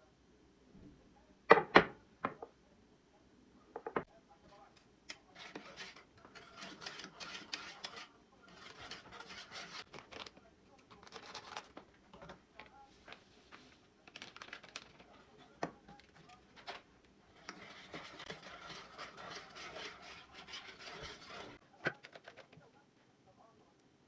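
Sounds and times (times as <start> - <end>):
scratching and rubbing: 5.1 - 22.6.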